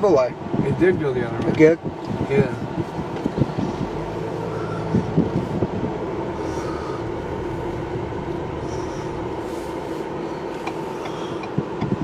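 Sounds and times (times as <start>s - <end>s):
engine hum: 0.0s - 12.0s.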